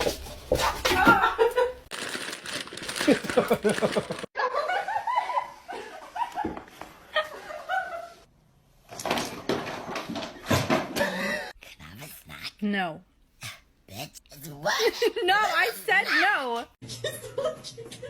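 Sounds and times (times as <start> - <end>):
people laughing: 3.1 - 8.2, 14.8 - 18.0.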